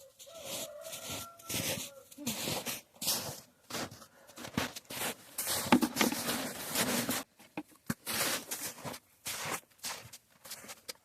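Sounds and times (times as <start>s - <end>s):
rustling and scraping: 4.6s - 10.7s.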